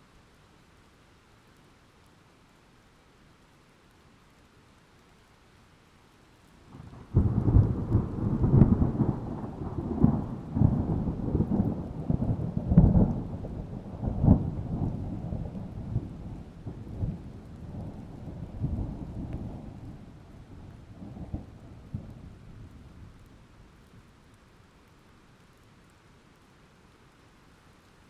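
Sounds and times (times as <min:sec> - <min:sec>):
rain: 0:00.0 - 0:28.0
thunder crack and rumbles: 0:06.7 - 0:23.2.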